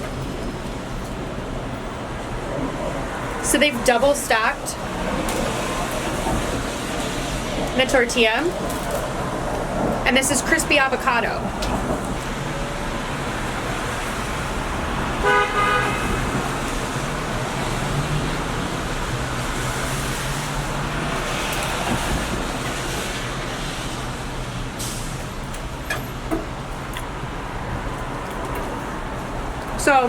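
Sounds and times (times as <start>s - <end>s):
road traffic hum: 0.0s - 30.0s
horn toot: 15.2s - 16.5s.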